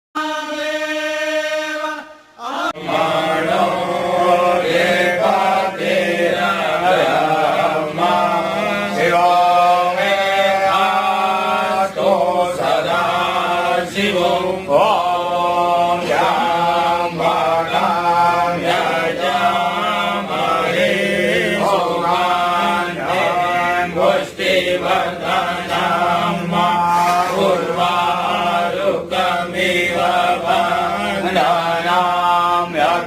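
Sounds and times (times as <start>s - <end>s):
person chanting: 0.2s - 33.0s
low drone: 24.3s - 29.8s.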